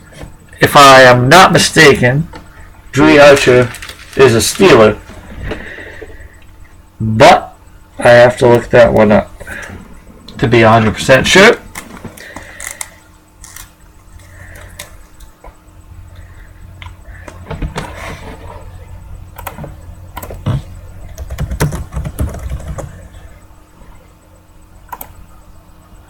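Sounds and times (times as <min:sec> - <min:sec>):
steady low hum: 0:00.0 - 0:26.0
sharp clicks and rustles: 0:03.4 - 0:05.6.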